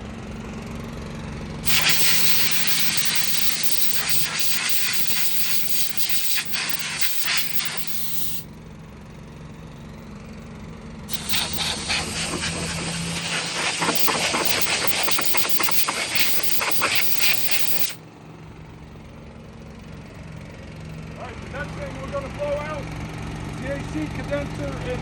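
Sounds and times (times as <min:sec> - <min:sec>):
air blow gun hissing: 0:01.7 - 0:08.4, 0:11.1 - 0:18.0.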